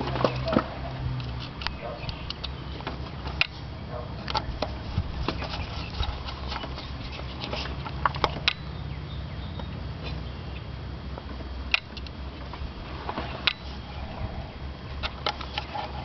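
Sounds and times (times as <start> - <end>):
steady low hum: 0.0 - 16.0.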